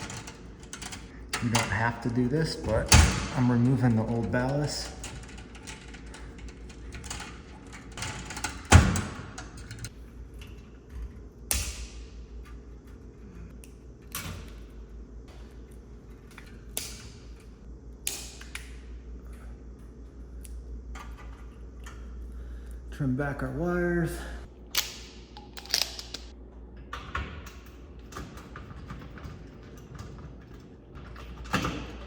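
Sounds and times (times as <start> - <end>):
sharp snaps and clicks: 16.7 - 17.1, 18.0 - 18.8, 24.7 - 26.3.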